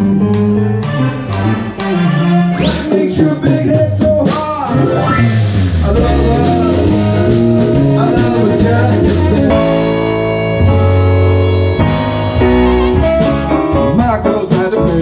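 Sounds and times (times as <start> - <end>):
live band playing: 0.0 - 15.0
prominent bass line: 0.0 - 15.0
person singing: 5.8 - 10.3, 12.3 - 15.0.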